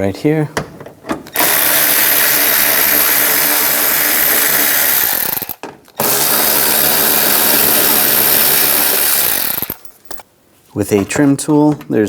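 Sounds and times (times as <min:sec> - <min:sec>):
cordless power driver spinning: 0:01.3 - 0:10.2.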